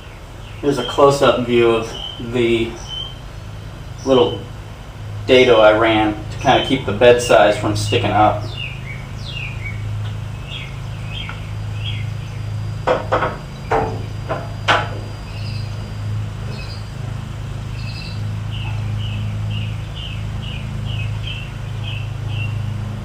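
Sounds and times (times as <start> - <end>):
bird chirping: 0.0 - 23.0
steady low hum: 0.0 - 23.0
wooden boards knocking: 12.8 - 15.2.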